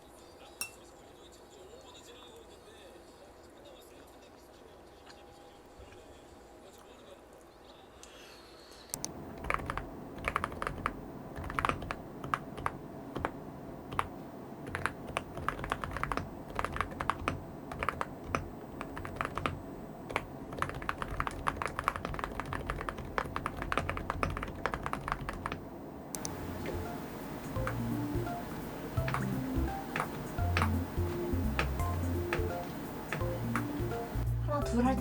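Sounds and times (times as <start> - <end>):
keyboard key clicks: 26.2 - 34.2
soft background music: 26.2 - 35.0.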